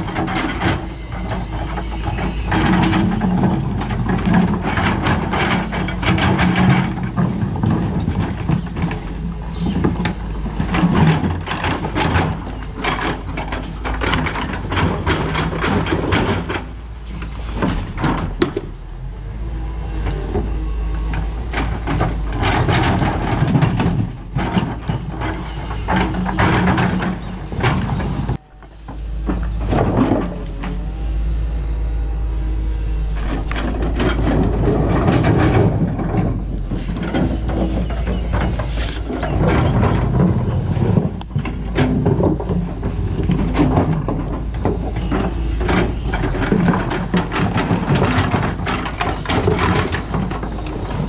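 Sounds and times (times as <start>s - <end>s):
metallic clanks and rattles: 0.0s - 19.2s, 20.0s - 30.9s, 33.1s - 51.0s
excavator diesel engine humming: 0.0s - 51.0s.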